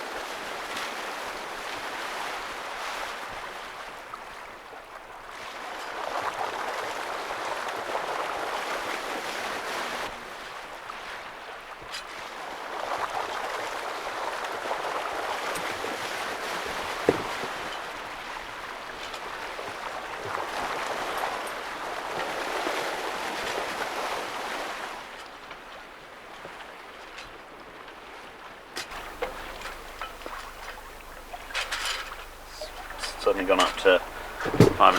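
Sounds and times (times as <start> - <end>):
water rushing along boat hull: 28.9 - 34.9.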